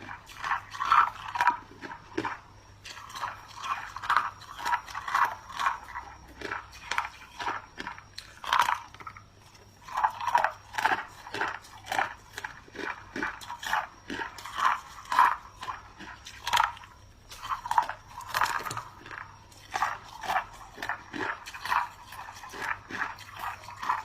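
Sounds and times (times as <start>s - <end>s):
person crunching ice: 9.8s - 24.0s.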